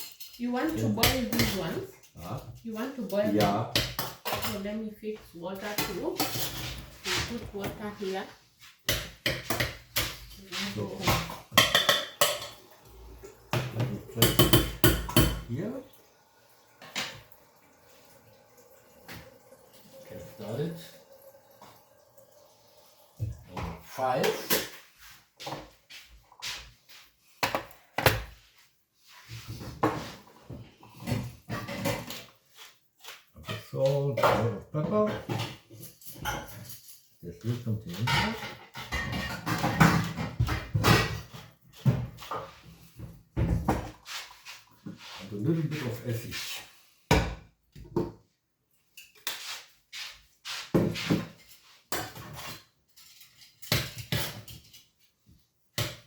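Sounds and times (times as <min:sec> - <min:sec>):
utensils and dishes clattering: 0:00.0 - 0:15.8, 0:23.5 - 0:25.8, 0:29.3 - 0:47.3, 0:50.6 - 0:55.0
kitchen items knocking: 0:08.9 - 0:12.6, 0:13.5 - 0:15.6.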